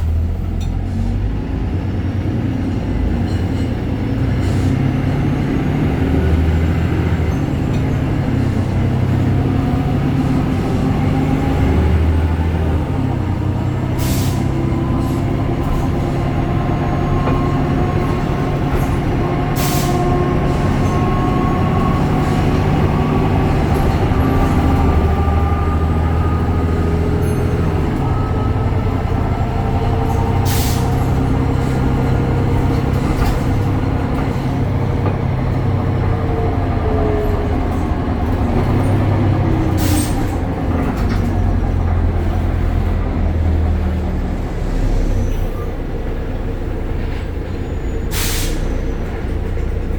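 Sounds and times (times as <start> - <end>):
bus diesel engine droning: 0.0 - 49.9
short air hisses: 14.0 - 14.4, 30.4 - 30.9, 48.1 - 48.8.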